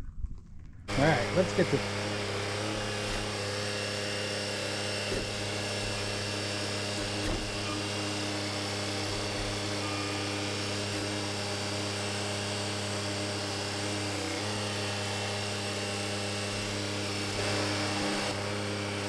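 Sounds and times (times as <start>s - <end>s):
tractor engine idling: 0.9s - 3.7s.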